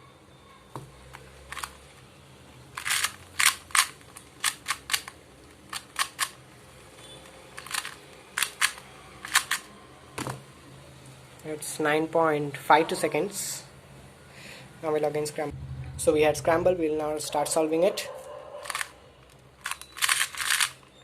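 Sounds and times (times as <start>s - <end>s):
puzzle cube layers clicking: 2.8s - 6.4s, 7.6s - 9.7s, 19.6s - 20.8s.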